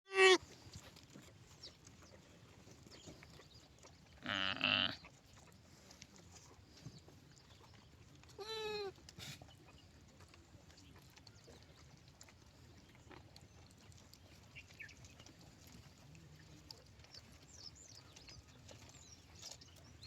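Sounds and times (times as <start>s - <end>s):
lamb bleating: 0.1s - 0.4s, 4.2s - 5.0s, 8.4s - 8.9s.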